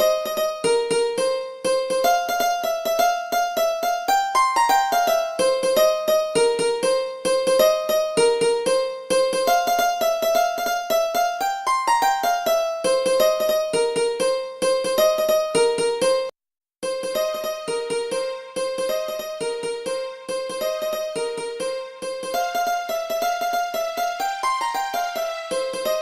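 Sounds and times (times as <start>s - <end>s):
sitar melody: 16.8s - 26.0s.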